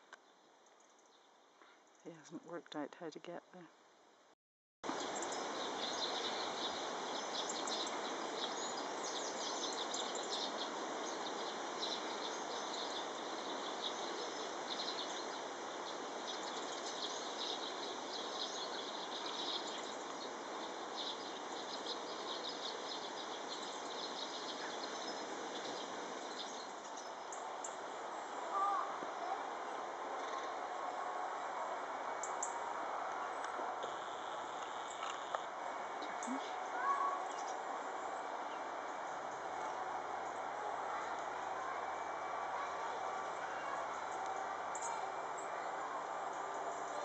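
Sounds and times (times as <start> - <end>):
small birds chirping: 4.9 - 29.4, 44.7 - 45.6
steady background hiss: 4.9 - 47.0.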